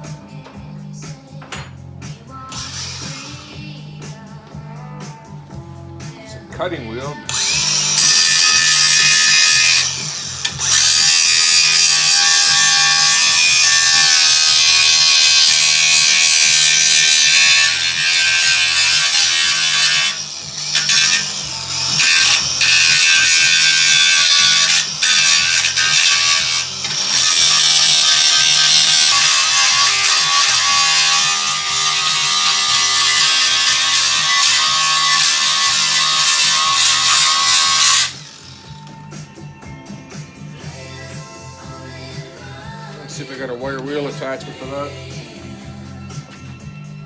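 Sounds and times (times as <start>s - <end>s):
angle grinder cutting metal: 2.5s - 3.8s, 7.3s - 39.2s.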